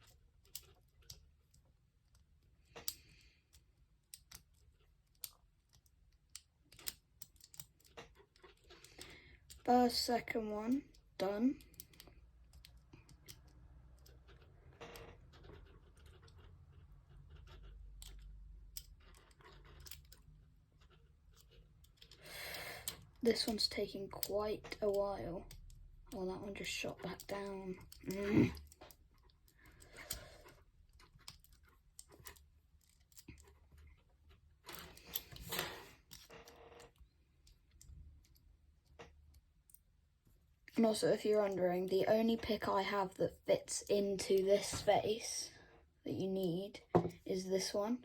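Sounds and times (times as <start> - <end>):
lock pick clicking and scraping: 0.0 - 9.6, 11.6 - 39.8.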